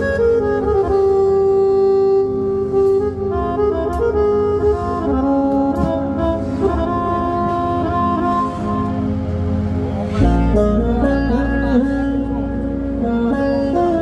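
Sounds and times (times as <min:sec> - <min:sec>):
keyboard reedy wind melody: 0:00.0 - 0:14.0
sustained chord: 0:00.0 - 0:14.0.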